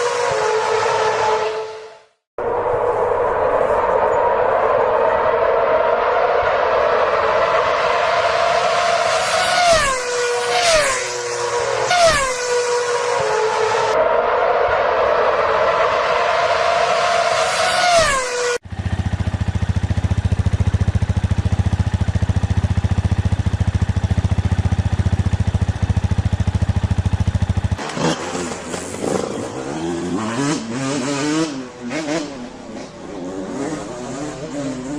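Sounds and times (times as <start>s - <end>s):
high engine whine: 0.0s - 34.6s
pulsing low motorcycle engine: 18.0s - 28.8s.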